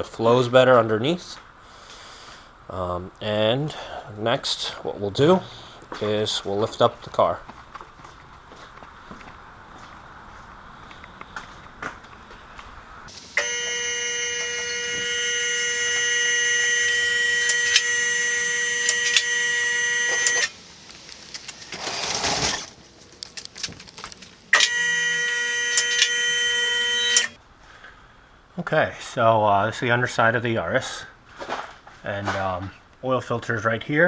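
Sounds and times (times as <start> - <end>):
electric motor whining: 13.1 - 27.4
sharp clicks: 13.1 - 27.4
short rushing hiss: 18.8 - 24.6.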